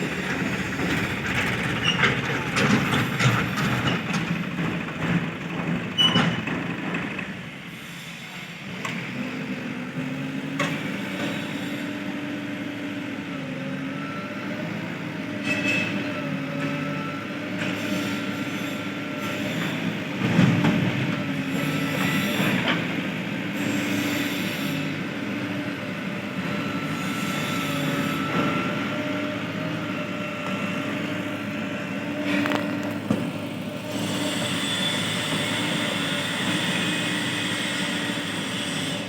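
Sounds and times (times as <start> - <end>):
machinery knocks and clanks: 0.0 - 7.4
diesel engine running: 0.0 - 7.7, 25.0 - 38.0.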